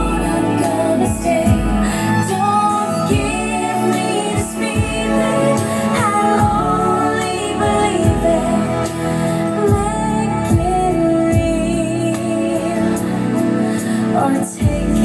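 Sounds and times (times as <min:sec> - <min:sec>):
steady kick drum beat: 0:00.0 - 0:09.0, 0:09.6 - 0:12.0
song with vocals over loudspeakers: 0:00.0 - 0:15.0.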